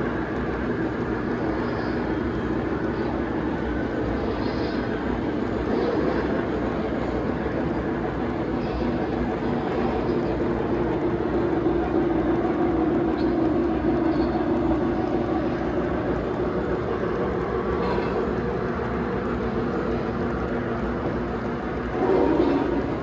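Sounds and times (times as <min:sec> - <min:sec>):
model train rumbling on rails: 0:00.0 - 0:23.0.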